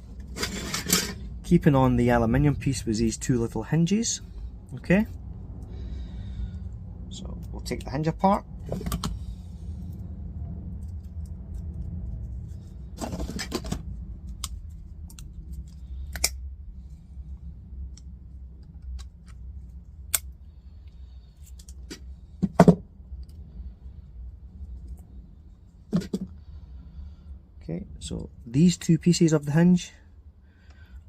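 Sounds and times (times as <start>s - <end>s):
steady low hum: 0.0s - 31.0s
metal parts clicking and scraping: 0.2s - 1.4s.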